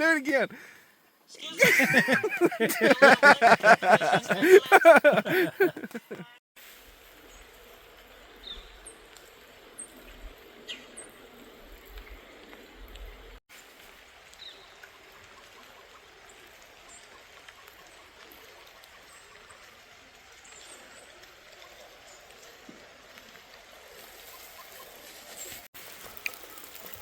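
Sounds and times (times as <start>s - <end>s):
trickling water: 25.8s - 27.0s.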